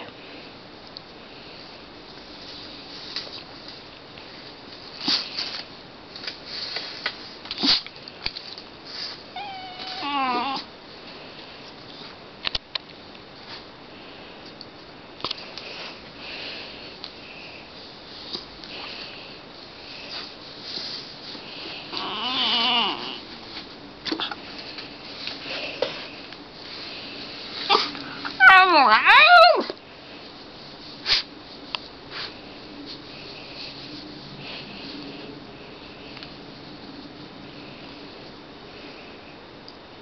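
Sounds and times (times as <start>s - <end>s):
dog yawning with squeaky whine: 9.4s - 10.6s, 22.0s - 23.2s.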